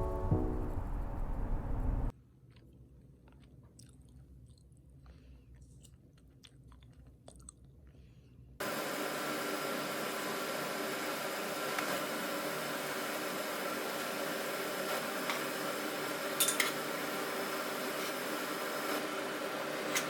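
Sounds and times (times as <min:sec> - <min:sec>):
music: 0:00.0 - 0:01.9
person chewing crunchy food: 0:02.3 - 0:08.0.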